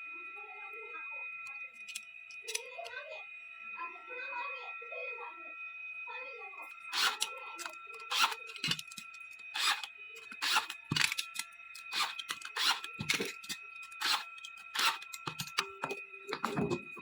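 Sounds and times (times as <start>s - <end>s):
scraping rasping strokes: 6.9s - 16.9s.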